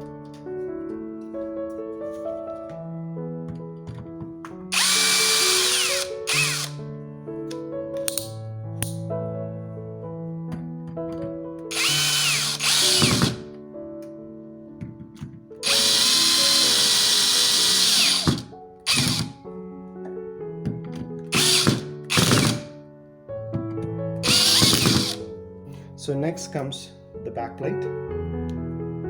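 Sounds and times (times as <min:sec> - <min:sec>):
power drill driving screws: 0:04.7 - 0:06.8, 0:11.7 - 0:13.4, 0:15.6 - 0:19.3, 0:21.3 - 0:22.7, 0:24.2 - 0:25.2.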